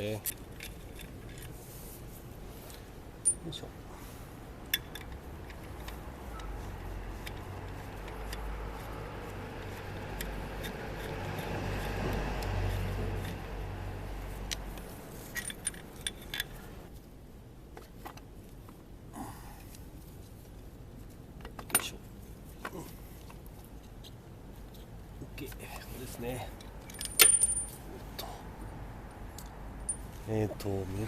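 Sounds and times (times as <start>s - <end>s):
hex key scraping with low rumble: 4.8s - 16.9s
light metallic clinks: 26.8s - 27.8s.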